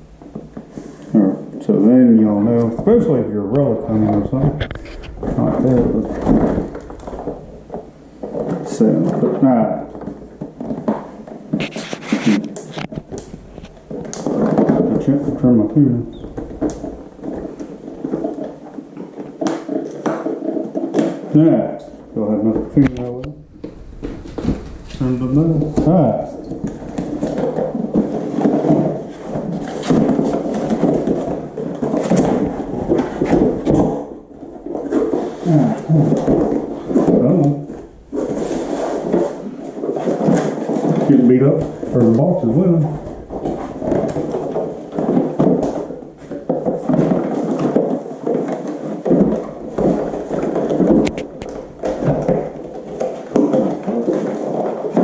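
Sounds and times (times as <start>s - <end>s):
cardboard box rubbing and scraping: 10.1s - 15.0s, 23.6s - 55.0s.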